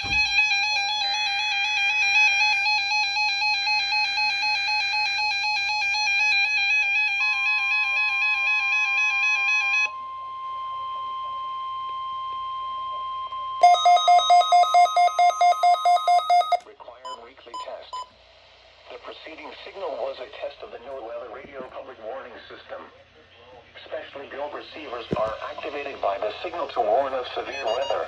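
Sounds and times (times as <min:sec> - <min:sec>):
fast-warbling alarm tone: 0:13.6 - 0:16.6
pulsing beep: 0:13.6 - 0:16.6
steady high alarm tone: 0:13.6 - 0:16.6.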